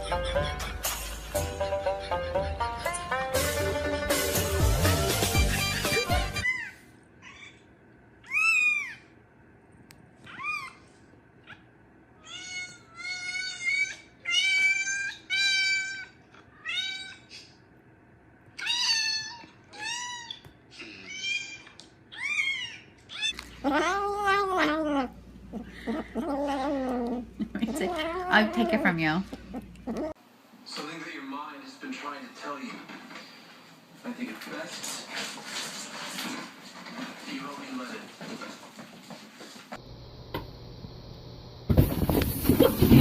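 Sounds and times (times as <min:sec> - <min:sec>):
cat meowing: 0:12.2 - 0:17.3, 0:18.6 - 0:25.2.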